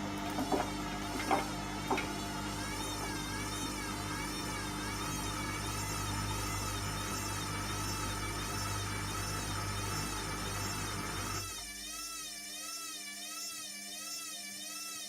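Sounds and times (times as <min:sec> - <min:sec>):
washing machine low rumble: 0:00.0 - 0:11.6
washing machine motor whine: 0:00.0 - 0:15.0.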